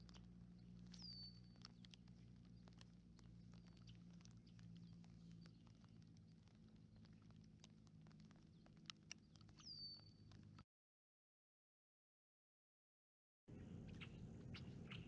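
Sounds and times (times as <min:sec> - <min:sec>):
faint light ticks: 0:00.0 - 0:10.6
low steady hum: 0:00.0 - 0:10.6, 0:13.5 - 0:15.0.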